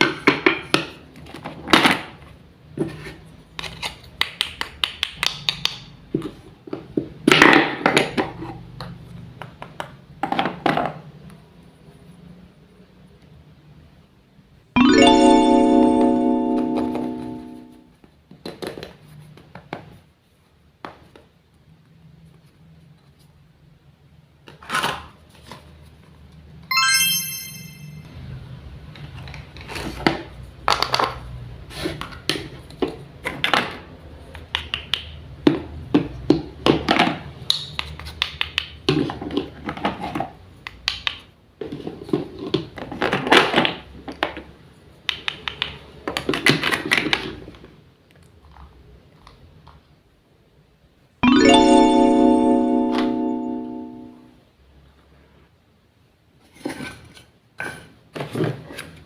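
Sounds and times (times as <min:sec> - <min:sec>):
short ringing tone: 0:26.7 - 0:28.1.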